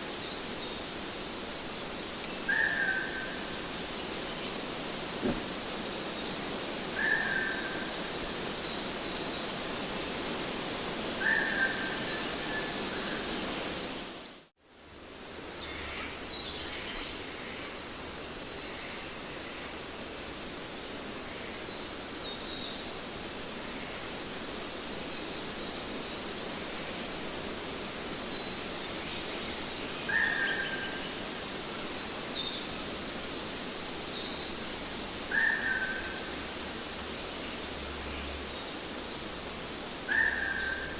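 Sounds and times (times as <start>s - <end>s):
outdoor background noise: 0.0s - 40.9s.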